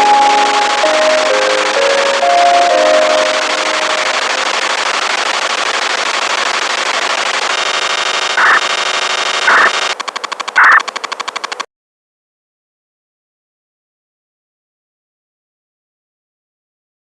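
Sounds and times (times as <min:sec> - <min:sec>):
buzzing interference tones: 0:00.0 - 0:10.0, 0:10.6 - 0:10.9
rapid pulsing buzz: 0:00.0 - 0:11.6
radio hiss: 0:00.4 - 0:10.0, 0:10.6 - 0:10.8.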